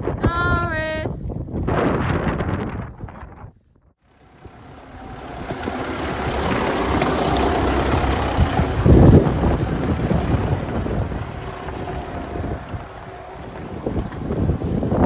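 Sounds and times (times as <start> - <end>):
vehicle engine running: 4.0 - 15.0
low rumble: 4.1 - 15.0.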